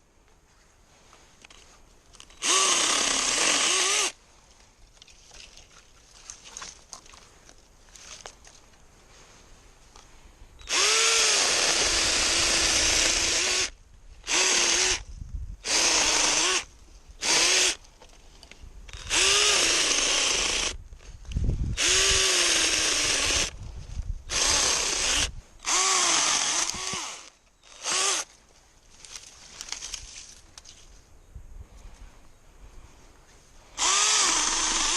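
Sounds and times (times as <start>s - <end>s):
electric chainsaw motor bursts: 2.3s - 4.2s, 10.6s - 15.0s, 15.6s - 17.8s, 18.9s - 20.8s, 21.8s - 23.6s, 24.3s - 28.3s, 33.8s - 34.9s.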